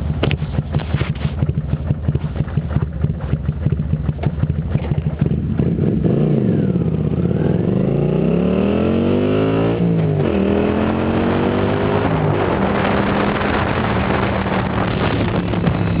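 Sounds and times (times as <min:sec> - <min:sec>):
motorcycle engine revving: 0:00.0 - 0:16.0.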